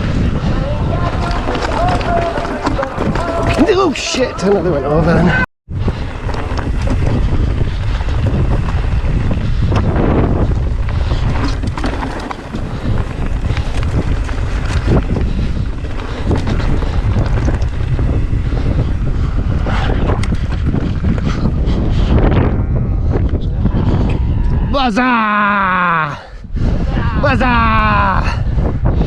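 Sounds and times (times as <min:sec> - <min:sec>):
wind buffeting microphone: 0:00.0 - 0:29.0
knocks and rattles: 0:01.0 - 0:04.0.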